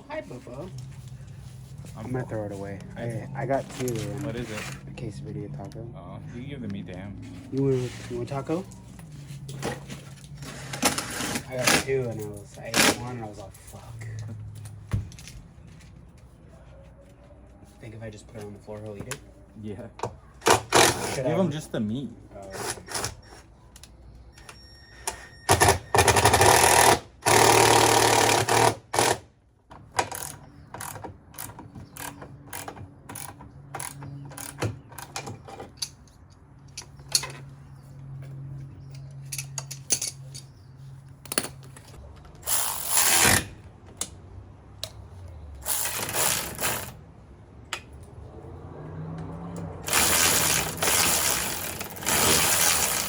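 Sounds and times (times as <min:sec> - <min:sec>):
power drill running: 0:25.5 - 0:29.2, 0:45.6 - 0:46.9, 0:49.8 - 0:53.0.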